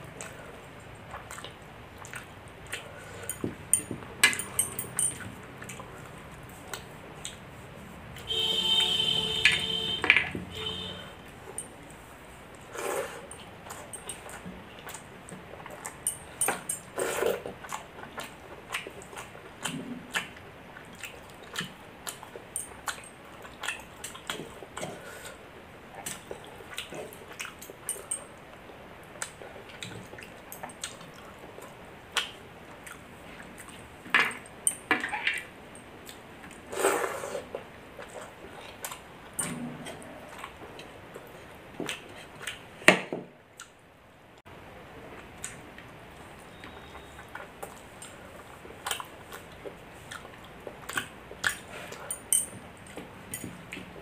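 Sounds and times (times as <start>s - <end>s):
wet chewing: 0.0s - 42.8s, 45.0s - 54.0s
plate or utensil clinks: 3.3s - 5.3s.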